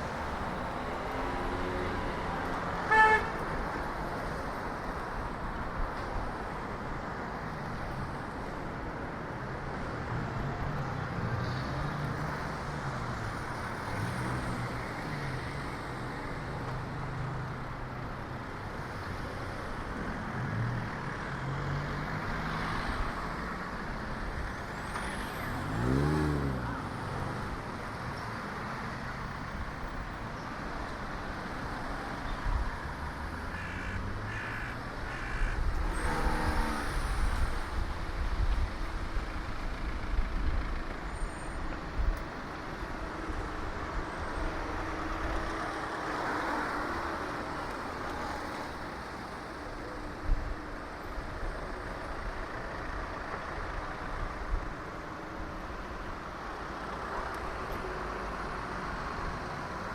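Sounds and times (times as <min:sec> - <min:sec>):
motor vehicles passing: 0:00.0 - 0:05.3, 0:07.4 - 0:59.9.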